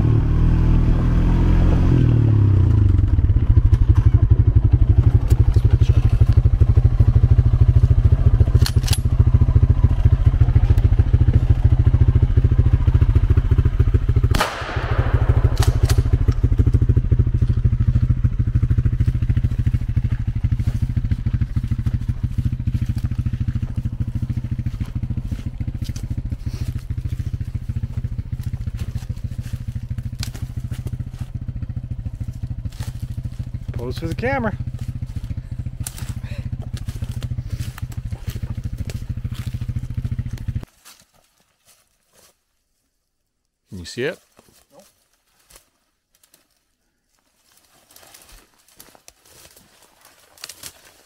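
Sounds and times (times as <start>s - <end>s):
vehicle engine low rumble: 0.0s - 40.7s.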